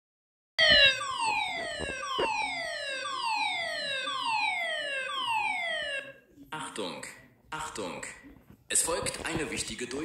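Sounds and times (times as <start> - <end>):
fire alarm falling tone: 0.6 - 6.2.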